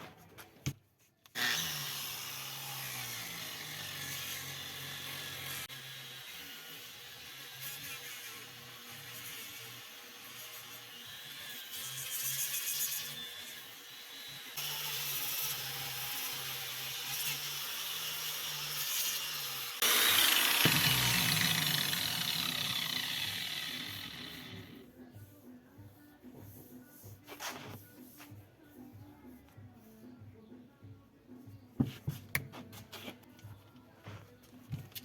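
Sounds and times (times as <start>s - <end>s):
angle grinder on stone: 1.4s - 24.8s.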